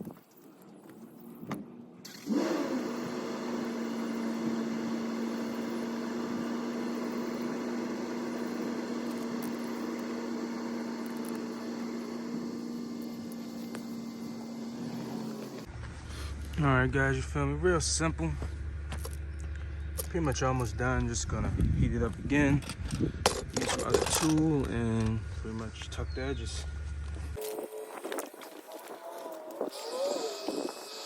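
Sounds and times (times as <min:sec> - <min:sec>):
heat gun fan humming: 0:02.0 - 0:15.7, 0:27.4 - 0:31.0.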